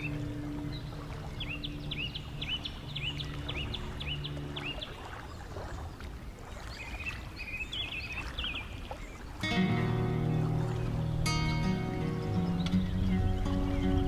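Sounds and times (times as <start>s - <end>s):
soft sustained music: 0.0s - 5.7s, 9.4s - 14.0s
outdoor background rush: 0.0s - 14.0s
songbird chirping: 0.0s - 14.0s.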